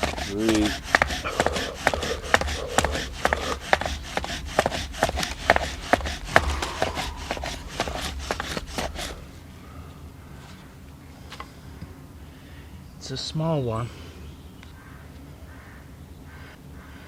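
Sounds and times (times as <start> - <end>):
bow drill rubbing and knocking: 0.0 - 9.4.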